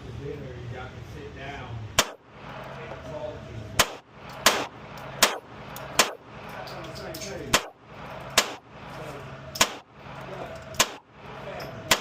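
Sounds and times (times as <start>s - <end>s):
pistol shots: 2.0s - 2.2s, 3.8s - 6.3s, 7.5s - 8.7s, 9.6s - 9.9s, 10.7s - 11.1s.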